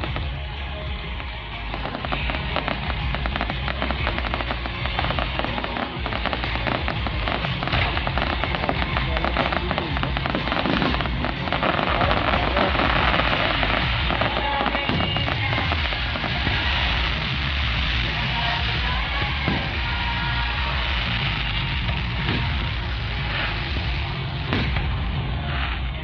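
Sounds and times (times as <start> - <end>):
fireworks bursting and crackling: 0.0 - 26.0
music playing: 0.0 - 26.0.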